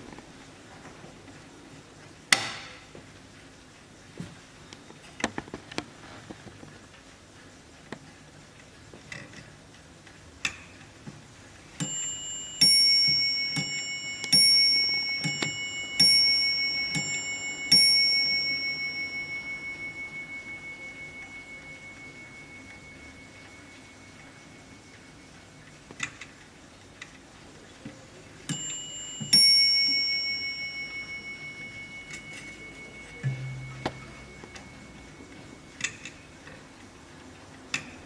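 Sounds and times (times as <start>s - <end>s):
clock striking two bells: 11.8s - 25.4s, 28.5s - 35.7s.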